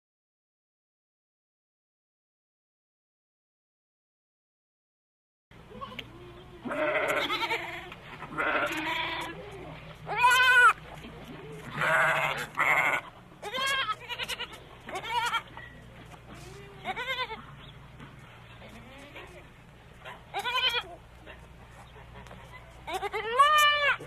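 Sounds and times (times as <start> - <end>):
livestock bleating: 5.7 - 10.8, 11.5 - 15.6, 16.4 - 17.5, 20.3 - 21.0, 22.9 - 24.0.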